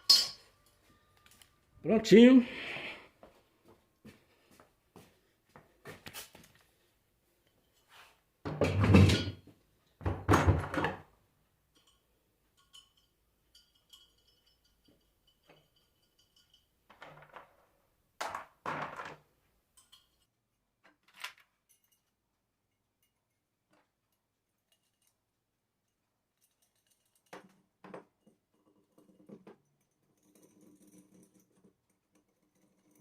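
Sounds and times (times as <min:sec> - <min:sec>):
hard parts clunking on workbench: 0:08.5 - 0:11.1, 0:18.2 - 0:19.2.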